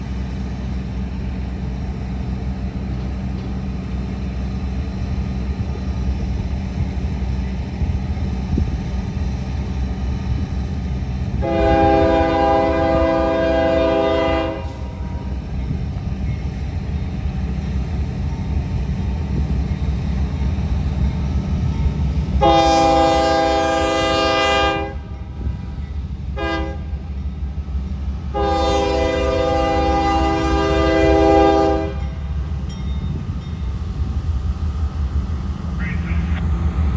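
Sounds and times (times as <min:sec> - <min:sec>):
locomotive engine rumble: 0:00.0 - 0:36.9
train air horn blasts: 0:11.4 - 0:15.3, 0:22.4 - 0:25.1, 0:26.4 - 0:27.0, 0:28.3 - 0:32.1.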